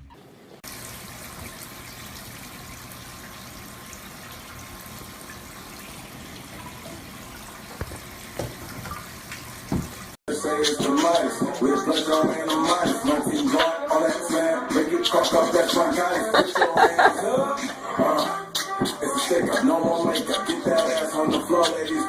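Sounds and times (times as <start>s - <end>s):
running water: 0.0s - 10.2s.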